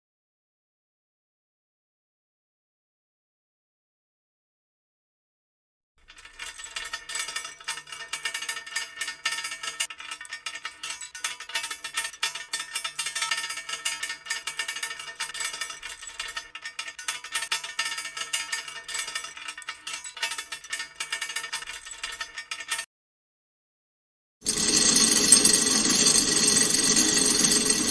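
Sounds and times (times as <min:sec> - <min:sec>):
metal chain rattling: 0:06.0 - 0:22.9.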